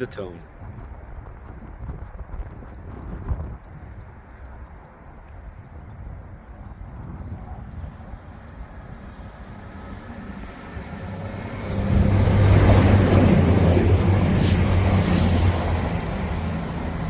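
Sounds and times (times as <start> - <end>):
diesel train passing: 7.8 - 17.0.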